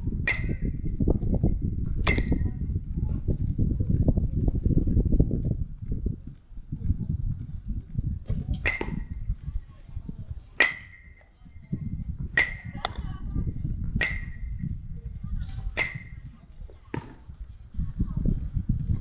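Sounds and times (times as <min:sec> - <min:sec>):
steady low rumble: 0:00.0 - 0:19.0
aluminium bat hitting baseballs: 0:00.2 - 0:00.8, 0:02.0 - 0:02.5, 0:08.3 - 0:09.2, 0:10.6 - 0:11.4, 0:12.3 - 0:13.1, 0:14.0 - 0:14.6, 0:15.6 - 0:17.2.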